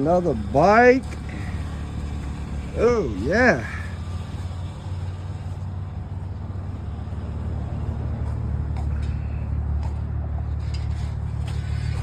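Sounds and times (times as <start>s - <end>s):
vehicle engine idling: 0.0s - 12.0s.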